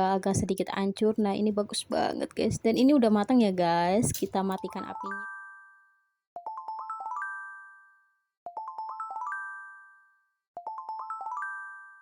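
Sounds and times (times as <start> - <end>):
chime-like jingle music: 4.6 - 12.0.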